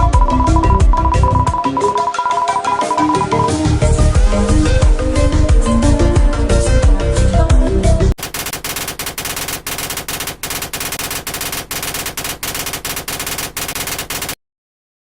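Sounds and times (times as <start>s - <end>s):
music: 0.0s - 8.2s
rapid rattling bursts: 8.2s - 14.4s.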